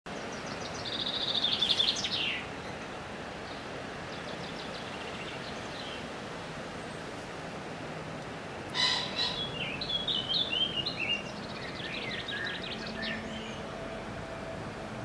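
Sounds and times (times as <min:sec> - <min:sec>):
bird singing: 0:00.1 - 0:02.8, 0:03.4 - 0:06.1, 0:08.7 - 0:14.5
background noise hiss: 0:00.1 - 0:15.0.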